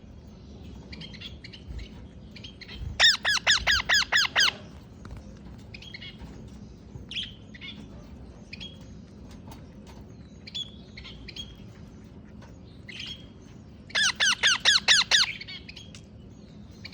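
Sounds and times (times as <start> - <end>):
parrot chirping: 3.0 - 4.6, 13.9 - 15.8
parrot squawking: 3.0 - 4.7, 13.9 - 15.6.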